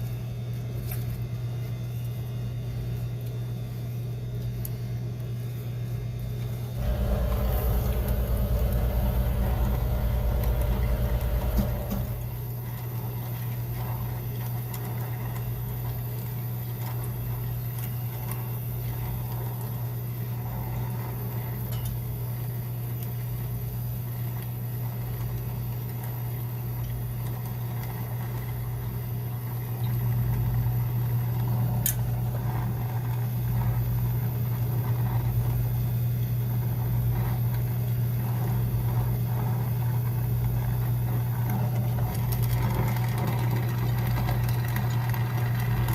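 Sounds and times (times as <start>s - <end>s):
machine motor humming: 6.8s - 12.6s.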